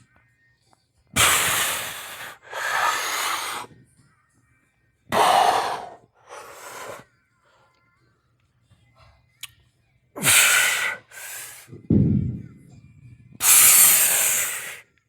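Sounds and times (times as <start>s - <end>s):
man breathing hard: 1.2s - 3.7s, 5.1s - 7.1s, 10.2s - 11.8s, 13.4s - 14.9s.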